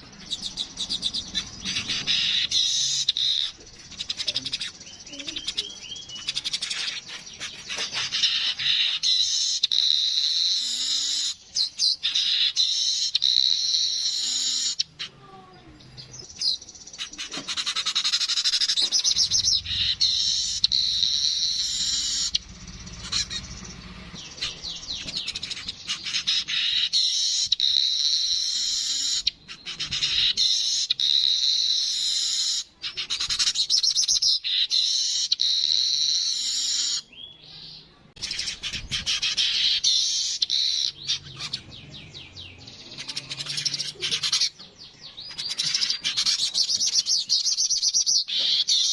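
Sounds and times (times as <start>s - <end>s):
bird buzzy chattering song: 0.0s - 48.9s.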